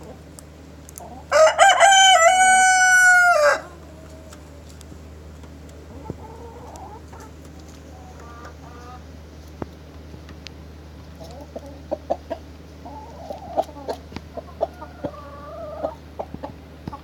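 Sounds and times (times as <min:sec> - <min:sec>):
rooster crowing: 0:01.3 - 0:03.8.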